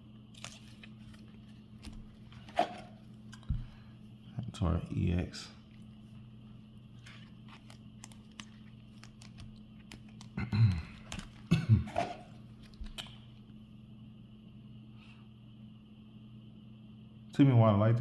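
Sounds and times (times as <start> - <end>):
trading cards clicking and tapping: 7.0 - 13.3.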